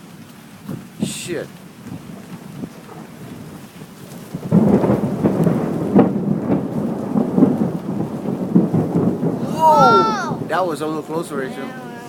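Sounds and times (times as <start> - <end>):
steady rain: 0.0 - 12.0
loud rolling thunder: 2.0 - 11.5.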